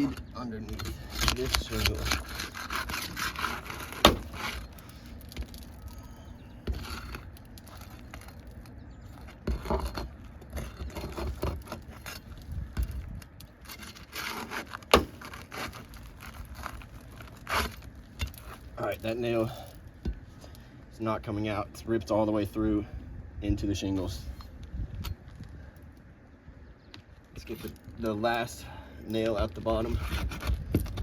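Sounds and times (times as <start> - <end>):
tool scraping shingles: 0.0 - 20.5, 29.2 - 31.0.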